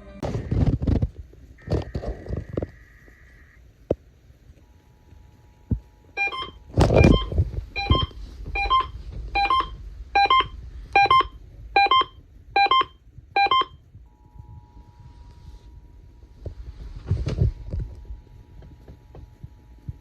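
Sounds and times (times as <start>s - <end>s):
faint steady tone: 4.6s - 17.0s
two-tone alert beeps: 6.2s - 13.7s
deep rumbling thump: 6.7s - 20.0s.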